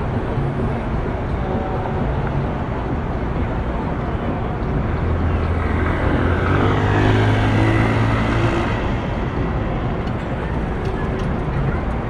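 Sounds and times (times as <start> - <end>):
city street traffic: 0.0 - 12.0
heavy vehicle engine hum: 0.0 - 12.0.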